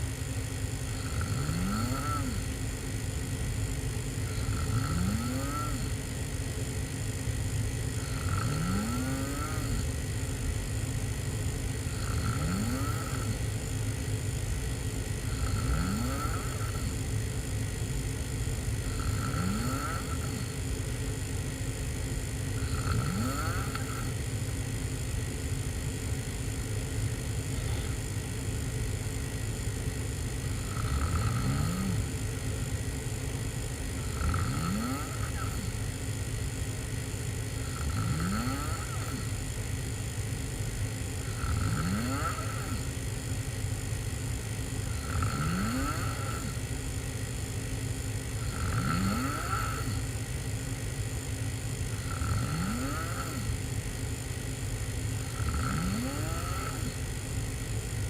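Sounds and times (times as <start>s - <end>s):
person snoring: 0.8s - 6.2s, 7.2s - 10.5s, 11.7s - 14.2s, 15.1s - 21.0s, 22.2s - 25.3s, 27.1s - 28.6s, 30.3s - 36.1s, 37.4s - 39.5s, 41.1s - 43.4s, 44.3s - 46.7s, 48.2s - 50.2s, 51.9s - 53.7s, 55.2s - 57.2s.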